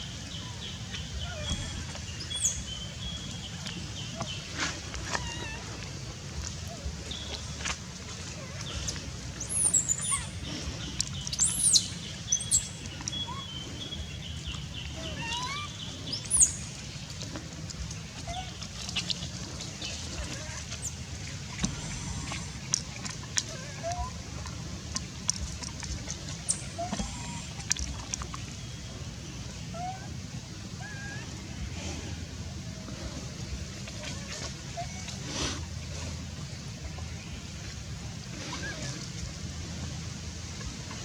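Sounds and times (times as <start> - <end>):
low rumble: 21.0 - 41.0.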